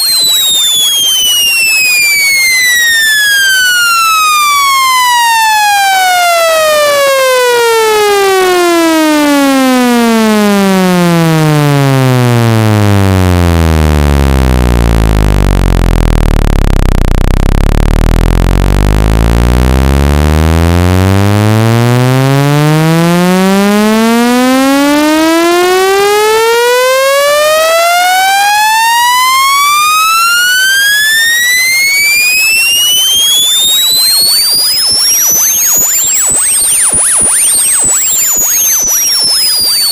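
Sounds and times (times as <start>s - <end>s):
buzzy synthesized tone sweeping: 13.8s - 24.9s, 31.5s - 39.9s.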